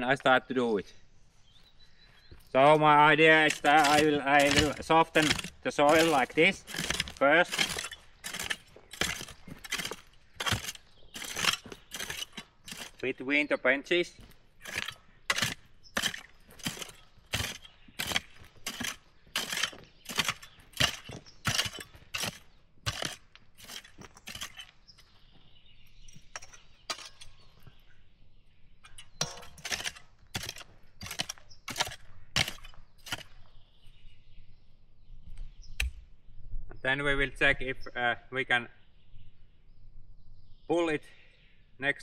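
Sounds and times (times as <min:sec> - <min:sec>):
hand tool chopping stony soil: 0:02.6 - 0:25.3, 0:26.0 - 0:27.8, 0:28.9 - 0:33.5.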